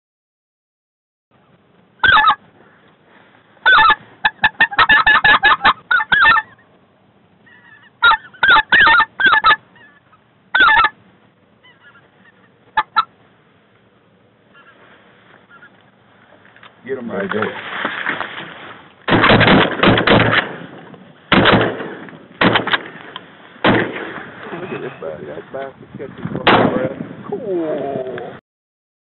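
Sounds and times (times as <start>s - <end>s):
goose yelping calls: 2.0s - 2.4s, 3.6s - 6.6s, 7.5s - 11.0s, 11.6s - 13.1s, 14.5s - 15.8s.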